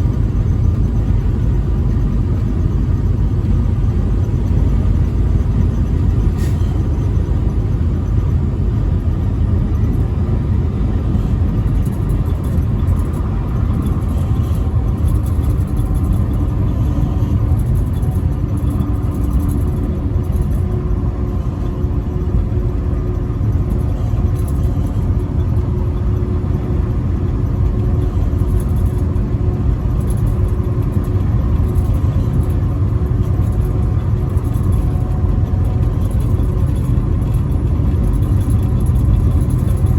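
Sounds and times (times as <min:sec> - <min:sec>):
truck engine and road rumble: 0:00.0 - 0:39.9.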